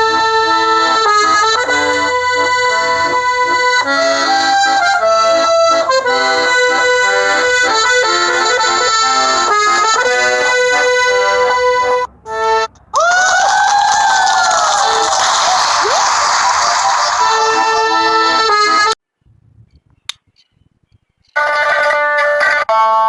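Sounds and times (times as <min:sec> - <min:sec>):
accordion playing a tune: 0:00.0 - 0:12.8, 0:16.4 - 0:19.0, 0:21.4 - 0:23.0.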